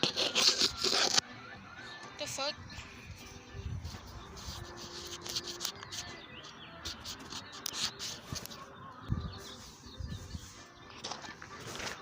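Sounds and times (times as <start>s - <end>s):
wind rumbling on microphone: 9.1s - 10.6s.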